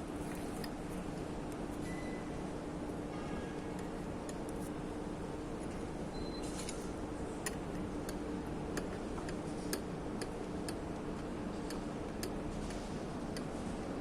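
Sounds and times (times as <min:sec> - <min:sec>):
steady low hum: 0:03.7 - 0:14.0.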